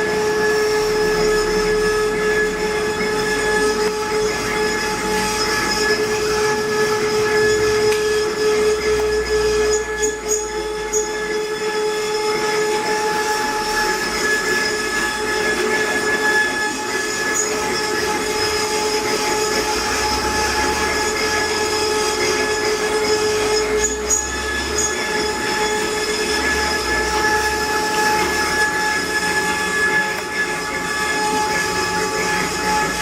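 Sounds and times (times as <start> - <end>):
rough wood cutting noise: 0.0 - 33.0
router spindle whining: 0.0 - 33.0.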